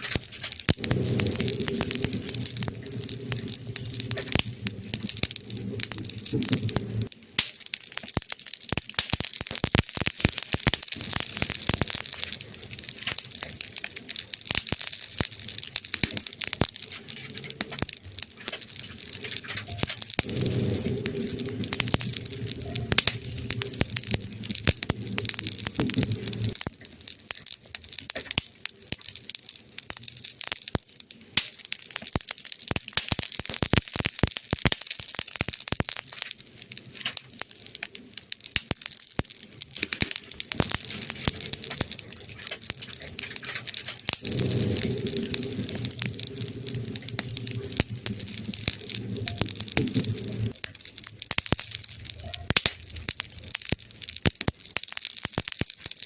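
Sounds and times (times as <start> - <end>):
campfire crackling: 0.0 - 56.0
low rumble of fire: 0.0 - 56.0.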